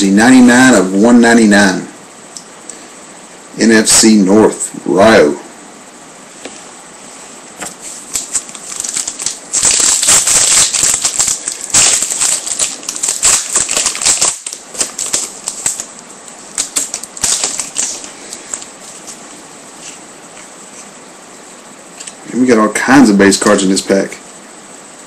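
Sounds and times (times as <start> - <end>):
foil wrapper crinkling and tearing: 7.9 - 19.2.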